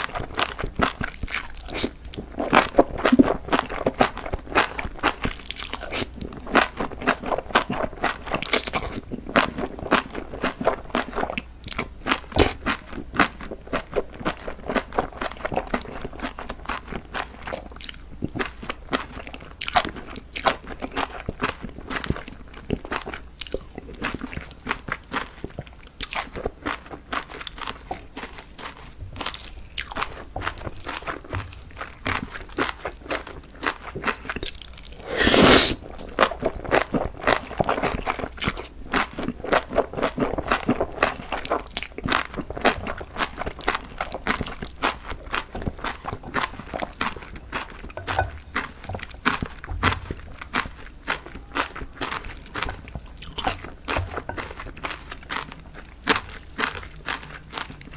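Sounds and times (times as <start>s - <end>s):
person chewing crunchy food: 0.0s - 57.9s
brief loud burst of noise: 35.0s - 35.8s.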